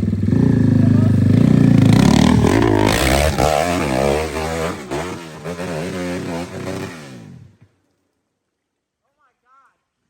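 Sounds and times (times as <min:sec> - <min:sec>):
dirt bike engine revving: 0:00.0 - 0:07.6.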